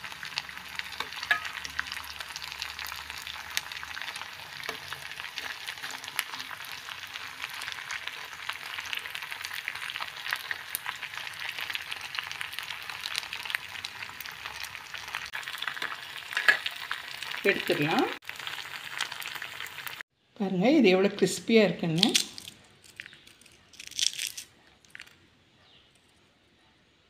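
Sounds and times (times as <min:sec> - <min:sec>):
food deep-frying in oil: 0:00.0 - 0:20.0
oil crackles and pops: 0:00.0 - 0:20.0, 0:22.0 - 0:25.2.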